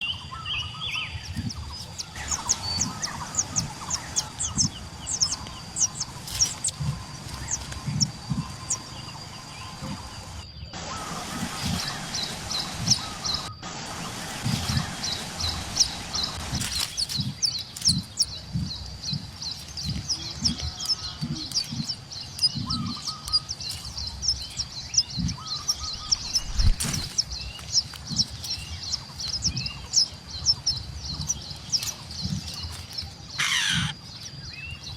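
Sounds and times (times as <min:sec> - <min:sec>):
small birds chirping: 0:00.0 - 0:34.9
low thumps and bumps: 0:26.0 - 0:29.8.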